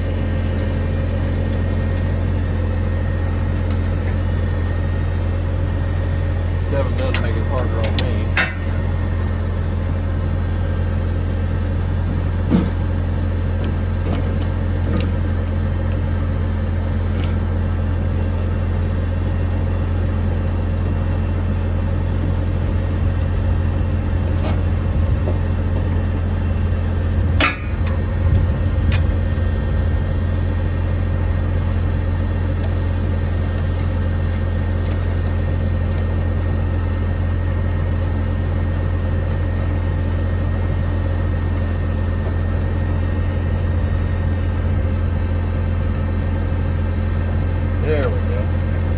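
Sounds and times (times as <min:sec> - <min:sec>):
low machine hum: 0:00.0 - 0:48.9
sharp clicks and knocks: 0:07.0 - 0:08.8, 0:27.4 - 0:28.0.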